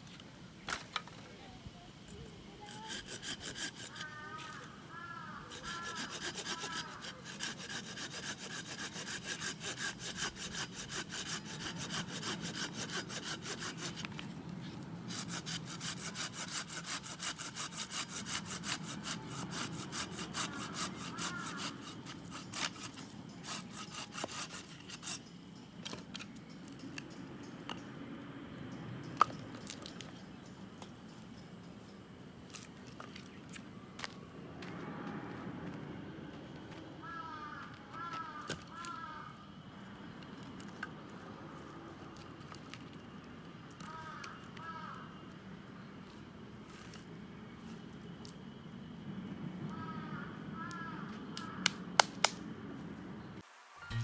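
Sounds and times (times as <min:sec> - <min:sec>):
hand saw cutting wood: 0:02.6 - 0:04.6, 0:05.4 - 0:14.2, 0:15.1 - 0:25.3.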